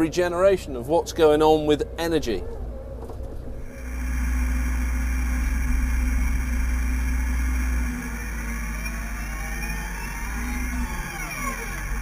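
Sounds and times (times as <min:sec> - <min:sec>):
excavator engine drone: 0:02.6 - 0:12.0.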